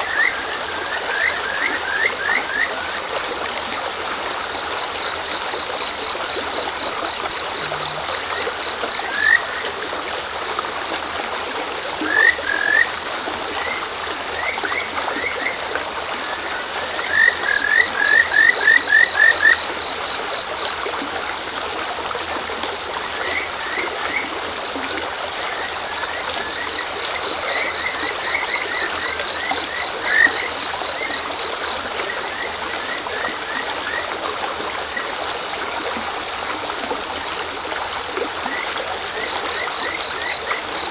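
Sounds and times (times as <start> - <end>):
frogs calling with whistled notes: 0.0 - 3.3, 4.2 - 11.4, 12.0 - 21.2, 22.8 - 35.8, 37.6 - 40.9
murmur of shallow river: 0.0 - 40.9
crickets chirping: 4.4 - 11.0.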